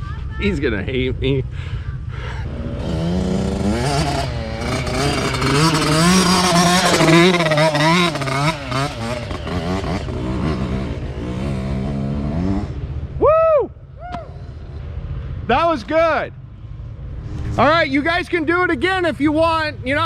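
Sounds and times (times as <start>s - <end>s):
dirt bike engine revving: 2.4s - 13.1s.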